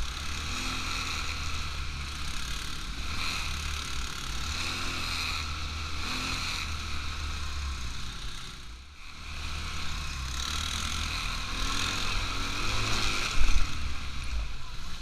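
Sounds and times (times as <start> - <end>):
quad bike engine running: 0.0 - 15.0.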